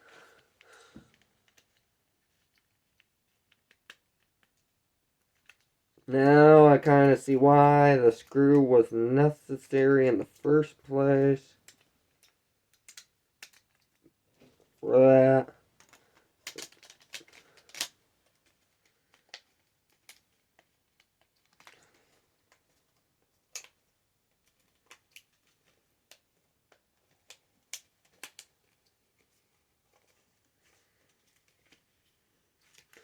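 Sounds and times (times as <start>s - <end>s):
small clicks and taps: 11.6s - 14.5s, 15.8s - 30.2s.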